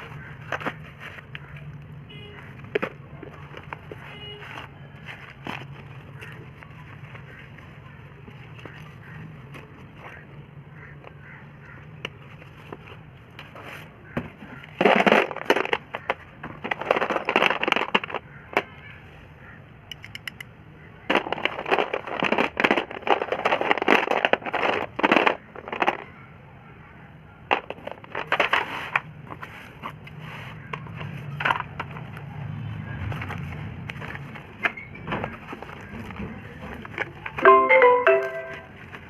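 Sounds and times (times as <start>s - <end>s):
slate pencils crunching and snapping: 14.6s - 18.3s, 21.1s - 26.1s.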